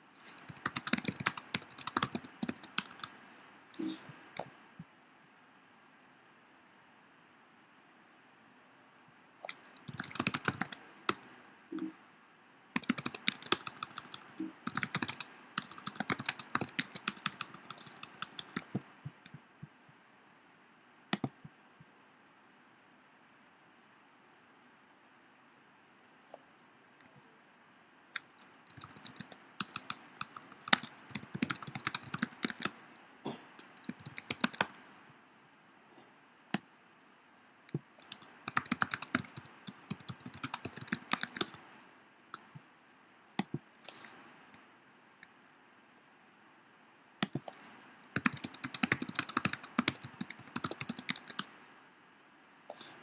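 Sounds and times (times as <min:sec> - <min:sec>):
laptop keyboard typing: 0:00.2 - 0:04.5, 0:09.4 - 0:11.9, 0:12.8 - 0:19.4, 0:21.2 - 0:21.4, 0:28.2 - 0:32.8, 0:33.6 - 0:34.8, 0:37.7 - 0:41.6, 0:43.4 - 0:44.1, 0:47.2 - 0:51.6.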